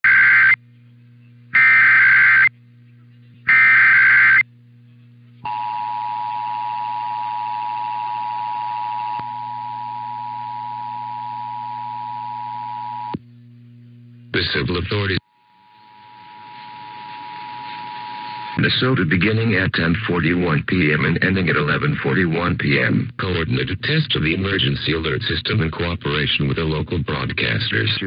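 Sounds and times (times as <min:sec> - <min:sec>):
low hum: 0:00.1 - 0:24.8
data burst tones: 0:03.5 - 0:04.4.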